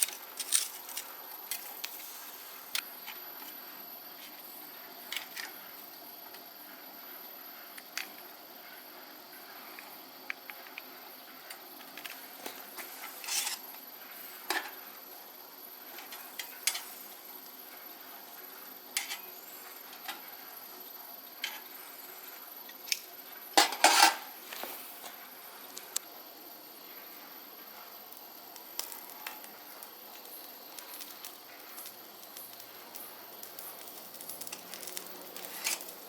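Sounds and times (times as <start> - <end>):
utensils clinking on metal grill: 0.0 - 1.8, 12.8 - 13.7, 16.0 - 17.0, 19.0 - 19.3, 23.6 - 24.3, 33.5 - 36.0.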